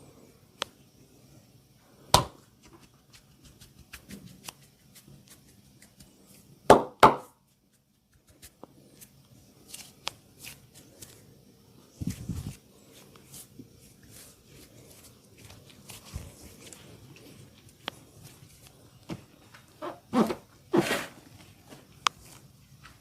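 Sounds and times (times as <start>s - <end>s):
hands slapping and cracking on body: 2.2s - 6.2s.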